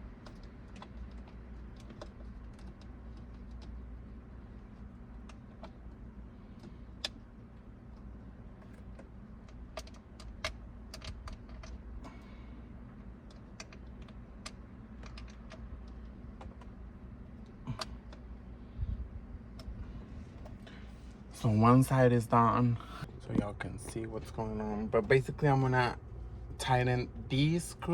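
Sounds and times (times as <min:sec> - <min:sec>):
low steady hum: 0:00.0 - 0:27.9.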